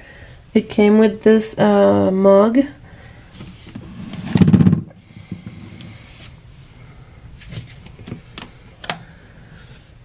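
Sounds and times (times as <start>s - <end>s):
heavy thump: 4.2s - 5.6s.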